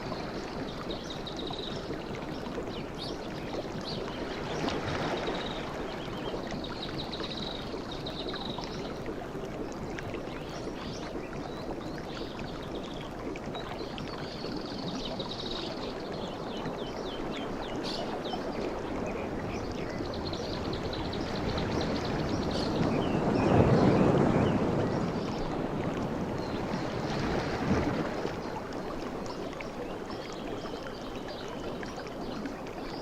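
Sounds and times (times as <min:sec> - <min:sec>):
birds chirping and warbling: 0:13.8 - 0:25.5
sea waves washing ashore: 0:20.2 - 0:29.2.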